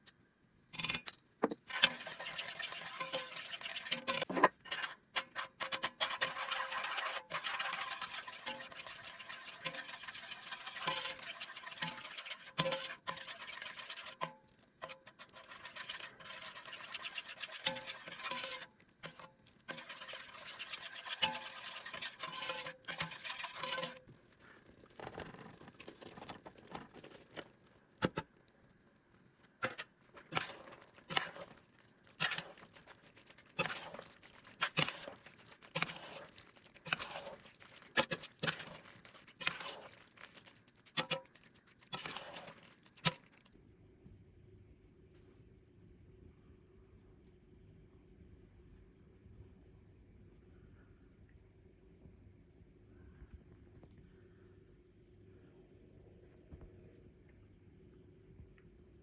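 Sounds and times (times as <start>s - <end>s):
cooking crackling and scraping: 0.0s - 43.6s.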